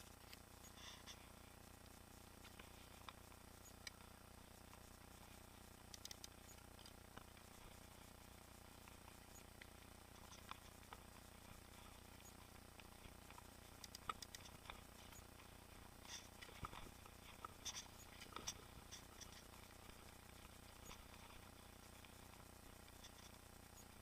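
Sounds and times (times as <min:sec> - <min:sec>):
low steady hiss: 0:00.0 - 0:24.0
bicycle clicks and ticks: 0:01.8 - 0:04.0, 0:05.7 - 0:07.6, 0:08.8 - 0:24.0.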